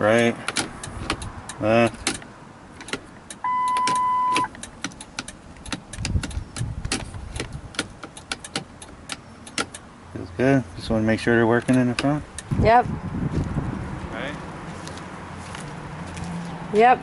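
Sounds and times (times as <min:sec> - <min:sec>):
turn signal flasher clicking: 0:00.4 - 0:10.0, 0:11.6 - 0:12.5
steady beep: 0:03.4 - 0:04.5.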